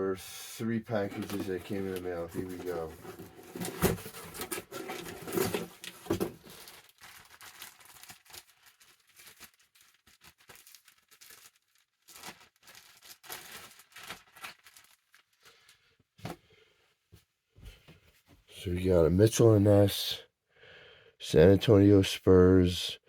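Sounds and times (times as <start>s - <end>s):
package packaging tearing and crinkling: 1.0s - 15.7s.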